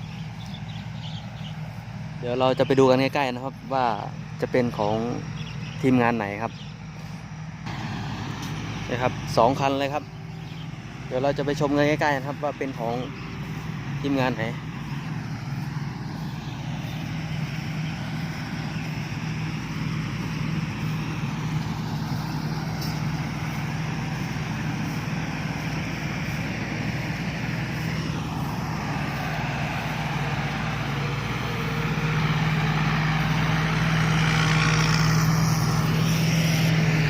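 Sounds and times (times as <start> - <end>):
harvester engines humming: 0.0 - 37.0
broad rushing noise: 7.6 - 37.0.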